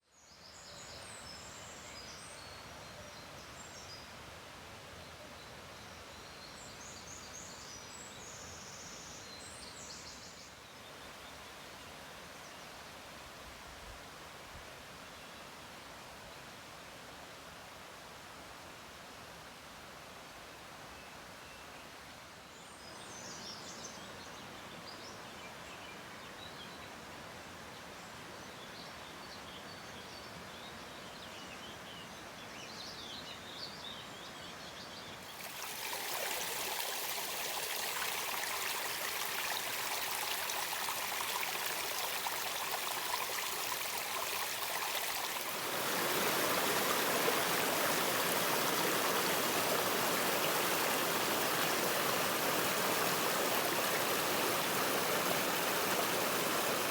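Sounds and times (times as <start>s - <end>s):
soft outdoor hiss: 0.1s - 56.9s
rushing water: 35.2s - 56.9s
birds chirping: 35.3s - 56.9s.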